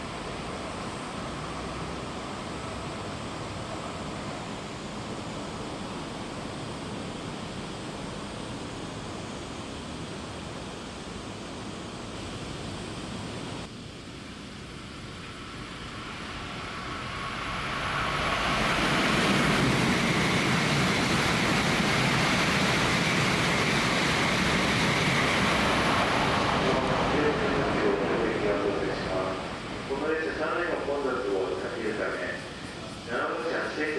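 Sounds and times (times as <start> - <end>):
high-speed train rushing past: 0.0 - 4.6, 14.3 - 33.9.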